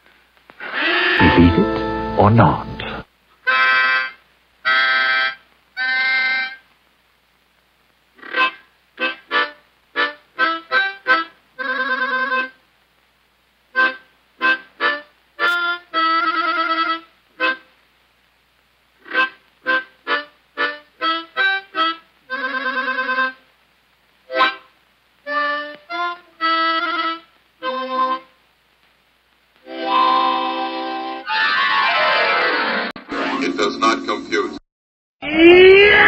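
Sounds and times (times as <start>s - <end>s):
accordion chords: 1.2s - 6.6s, 8.2s - 12.6s, 13.8s - 17.7s, 19.0s - 23.4s, 24.3s - 28.4s, 29.6s - 34.2s.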